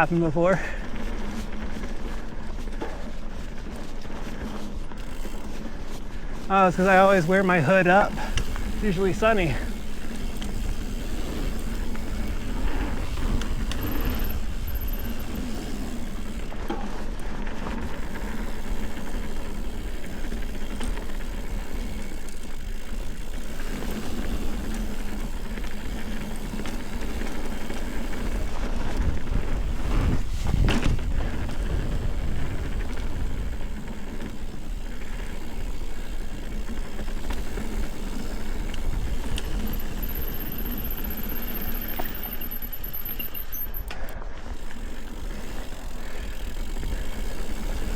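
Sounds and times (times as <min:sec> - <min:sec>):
bike rattling: 0:00.0 - 0:47.9
bike tyres rolling on dirt: 0:00.0 - 0:47.9
bike jolt: 0:00.6 - 0:47.9
wind buffeting microphone: 0:24.0 - 0:34.8, 0:37.9 - 0:40.2.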